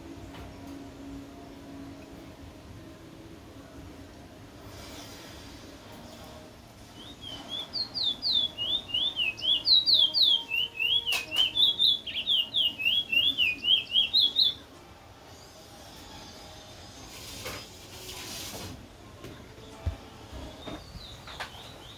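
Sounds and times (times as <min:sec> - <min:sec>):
bird singing high notes: 0:07.0 - 0:14.6.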